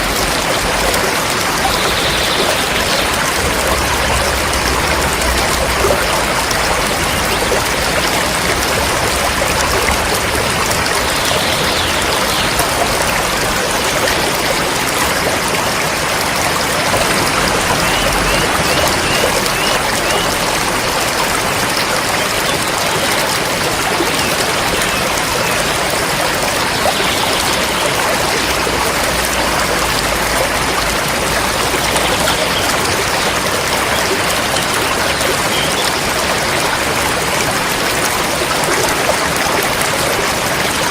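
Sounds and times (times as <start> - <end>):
river flowing: 0.0 - 40.9.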